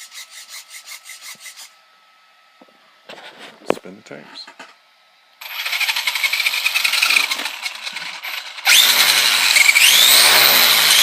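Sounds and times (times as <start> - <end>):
electric toy motor whining: 5.4 - 11.0.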